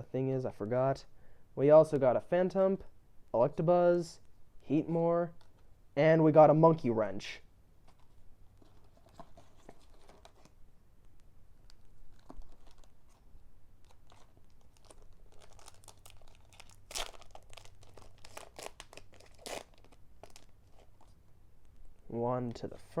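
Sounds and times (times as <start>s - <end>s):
foil wrapper tearing and crinkling: 11.7s - 13.2s, 13.8s - 21.1s.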